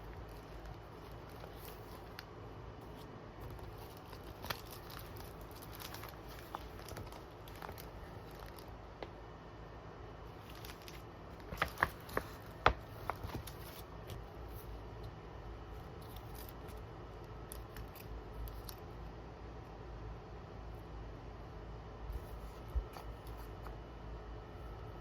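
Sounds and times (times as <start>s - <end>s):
light taps and crinkles: 0.1s - 9.2s, 10.4s - 14.2s.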